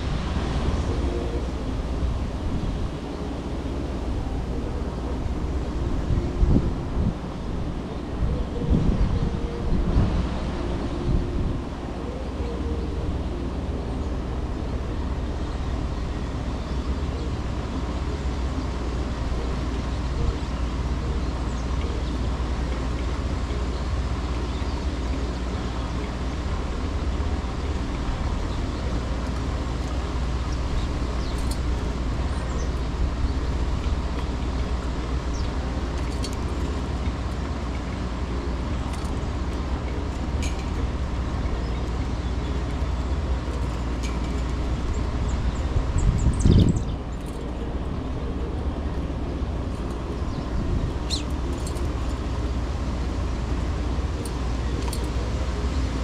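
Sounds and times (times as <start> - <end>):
city traffic: 0.0 - 56.0
wind: 0.0 - 56.0.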